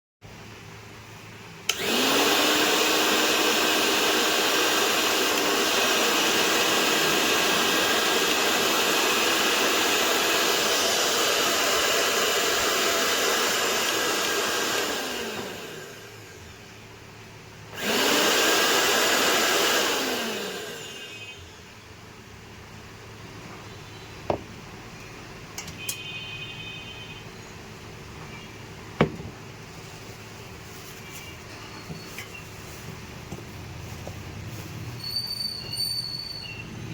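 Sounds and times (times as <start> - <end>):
electric grinder spinning: 1.7 - 16.5, 17.8 - 21.1.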